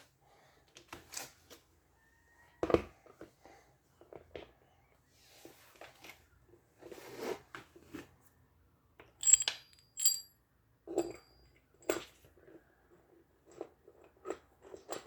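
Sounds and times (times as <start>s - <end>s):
sharp metallic clinks: 9.2s - 10.4s.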